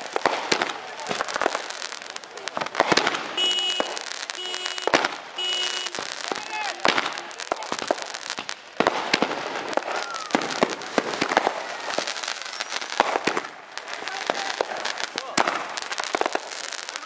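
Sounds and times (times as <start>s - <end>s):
fireworks cracks and pops: 0.0s - 17.0s
fireworks hissing crackle: 0.0s - 17.0s
loud firework bang: 2.7s - 12.1s.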